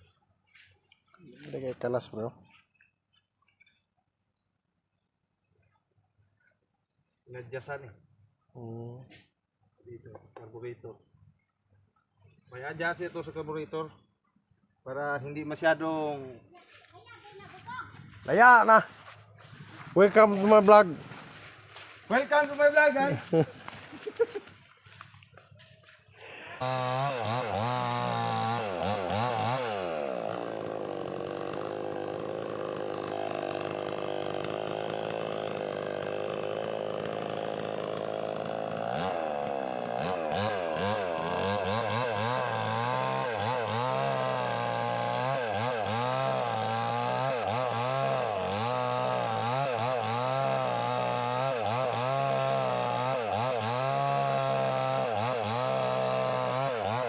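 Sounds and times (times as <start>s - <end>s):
chainsaw engine revving: 22.1s - 23.5s, 26.2s - 57.0s.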